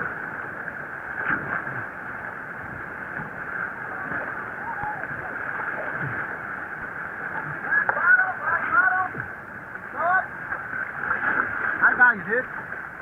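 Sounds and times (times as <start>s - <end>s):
river whitewater rushing: 0.0s - 13.0s.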